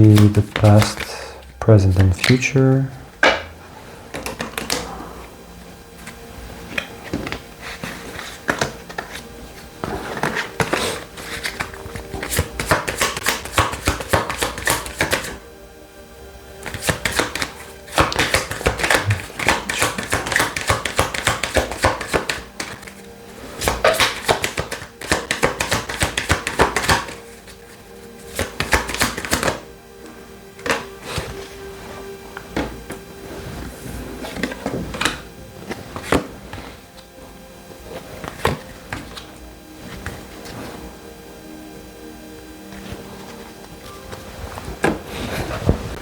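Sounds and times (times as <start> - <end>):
cards being shuffled: 0.0 - 2.5, 3.2 - 15.5, 16.5 - 41.6
soft background music: 0.0 - 46.0.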